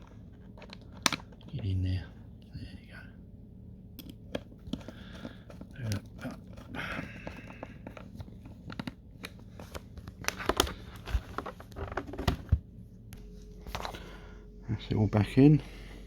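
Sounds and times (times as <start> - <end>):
hard plastic clicking and rattling: 0.1 - 1.7, 4.0 - 12.6.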